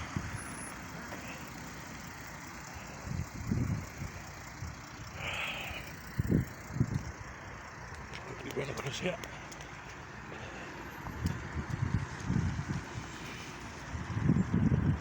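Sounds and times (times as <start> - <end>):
passing traffic: 0.0 - 15.0.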